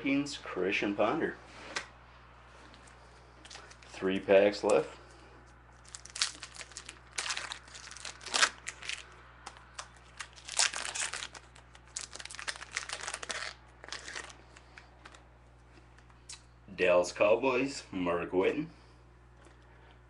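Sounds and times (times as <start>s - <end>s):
plastic wrapper tearing and crinkling: 5.8s - 15.2s.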